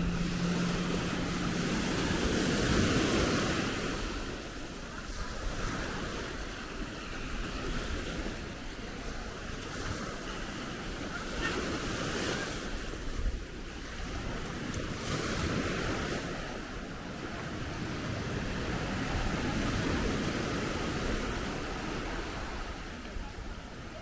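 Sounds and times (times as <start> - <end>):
wind buffeting microphone: 0.0 - 10.4
waves breaking on beach: 0.0 - 24.0.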